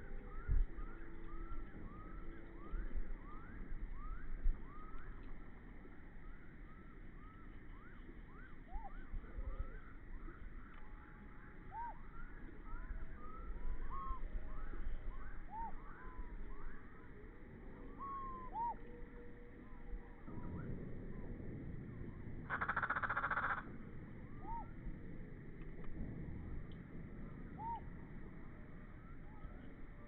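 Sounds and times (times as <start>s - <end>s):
low rumble: 0.0s - 30.0s.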